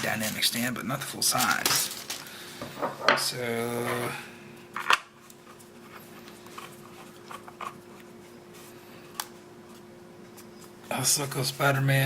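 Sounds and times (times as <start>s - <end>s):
plastic packaging clicks and rustling: 0.0s - 2.4s
faint hum: 0.0s - 12.0s.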